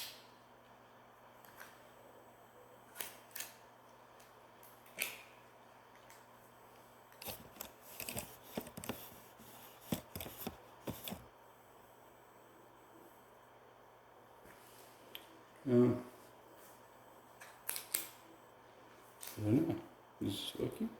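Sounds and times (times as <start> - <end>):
rustling: 7.2 - 11.3.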